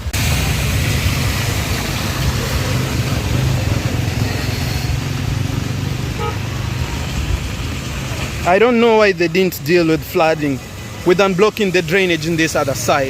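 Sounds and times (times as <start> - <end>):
rain hissing: 0.0 - 13.0
vehicle engine humming: 0.0 - 13.0.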